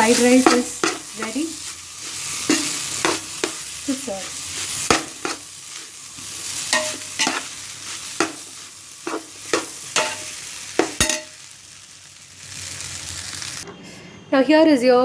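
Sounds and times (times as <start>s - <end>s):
utensil clanking on metal pan: 0.0s - 1.4s, 2.5s - 3.7s, 4.9s - 5.5s, 6.7s - 7.5s, 8.2s - 11.4s
rice sizzling in a pan: 0.0s - 13.6s.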